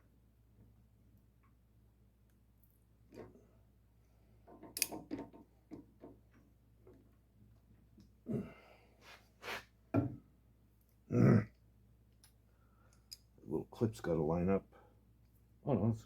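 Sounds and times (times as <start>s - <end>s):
light clicks and taps of metal parts: 4.4s - 8.2s, 12.1s - 13.4s.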